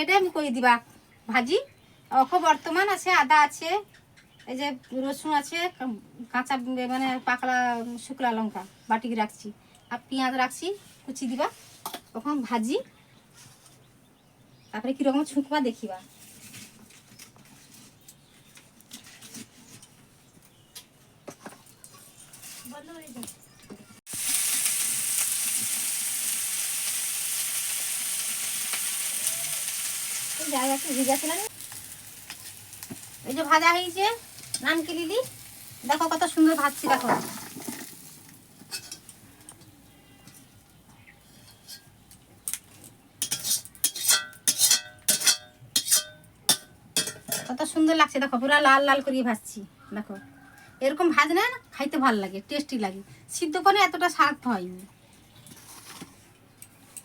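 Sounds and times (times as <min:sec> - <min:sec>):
oil frying crackles and pops: 0:24.1 - 0:40.8, 0:41.7 - 0:47.5
metal utensil clinking on cookware: 0:38.6 - 0:39.1, 0:43.2 - 0:47.6.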